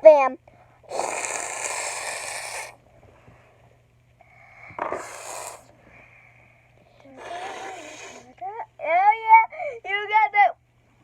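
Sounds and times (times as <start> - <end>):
child hissing like a cat: 0.9 - 2.8, 4.8 - 5.7, 7.0 - 8.4.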